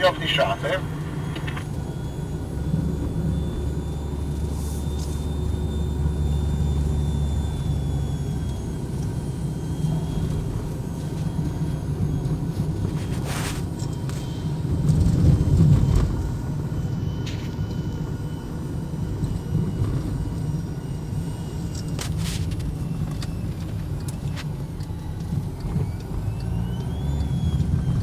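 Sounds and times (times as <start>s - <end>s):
car engine drone and road noise: 0.0s - 28.0s.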